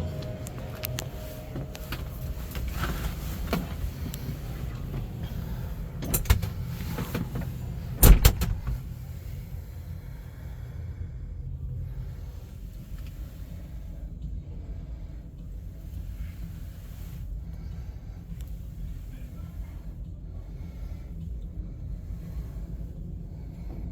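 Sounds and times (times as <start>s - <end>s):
vehicle engine low rumble: 0.0s - 23.9s
sharp clunks and knocks: 6.0s - 8.9s.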